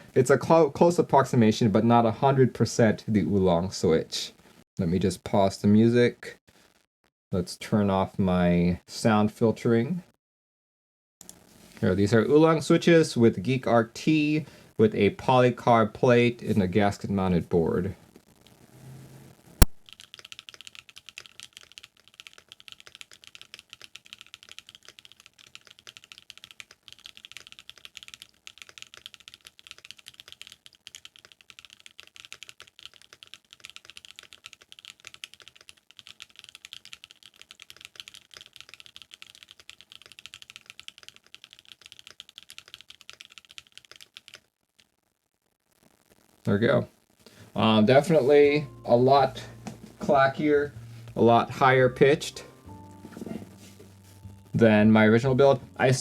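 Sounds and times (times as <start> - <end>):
sharp click: 19.6 - 19.8
fast mechanical keyboard typing: 19.8 - 44.9.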